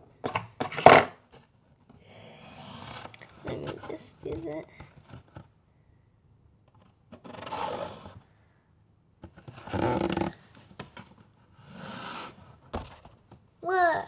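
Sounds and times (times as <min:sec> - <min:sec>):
swivel chair groaning: 0:09.6 - 0:10.4.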